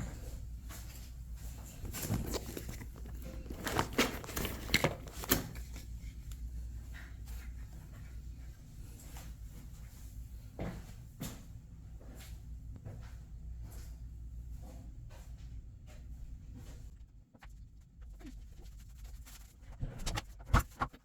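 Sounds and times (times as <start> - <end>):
low steady hum: 0.0 - 21.0
handling clicks and rustles: 0.7 - 6.4.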